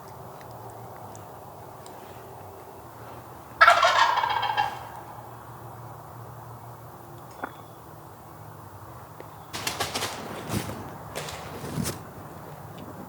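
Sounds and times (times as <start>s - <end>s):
turkey gobbling: 3.6s - 5.4s.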